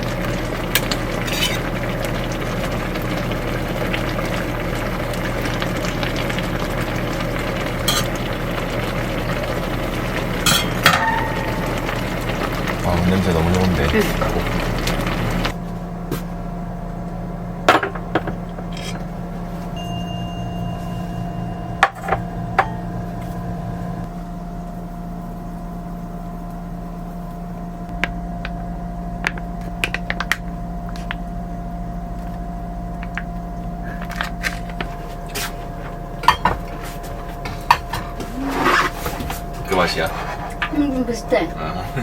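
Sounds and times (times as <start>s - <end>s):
steady low hum: 0.0s - 42.0s
dishes and utensils clinking: 7.8s - 8.2s, 10.4s - 12.0s, 34.0s - 40.8s.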